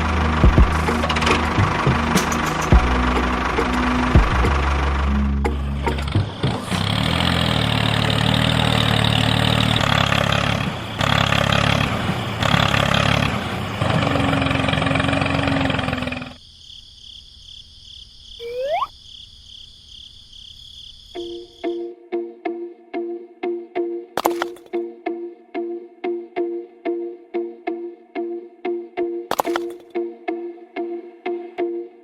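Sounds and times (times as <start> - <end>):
faint high tone: 18.4 - 18.9
short rising chirp: 18.4 - 18.9.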